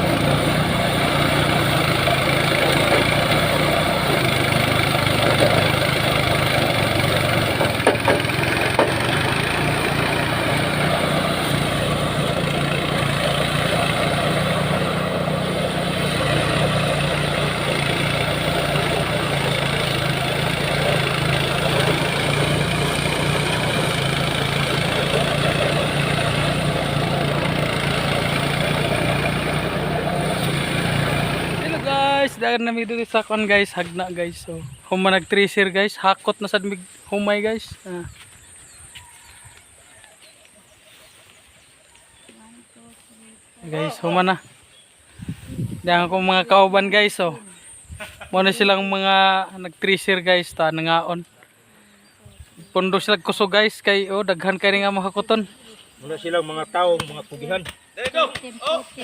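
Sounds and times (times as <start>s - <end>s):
rice thresher engine running: 0.0s - 35.6s, 43.6s - 51.0s.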